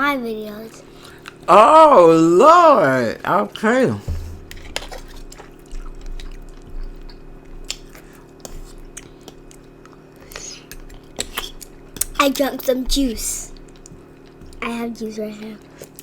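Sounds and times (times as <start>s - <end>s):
faint steady hum: 0.0s - 16.0s
person chewing food: 0.9s - 1.5s, 4.1s - 12.2s, 13.5s - 14.6s, 15.6s - 16.0s
wet mouth clicks and smacks: 7.1s - 12.2s.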